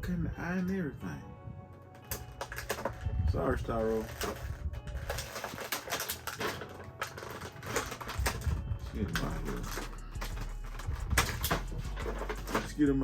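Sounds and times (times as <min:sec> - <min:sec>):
plastic packaging crinkling: 0:01.9 - 0:12.8.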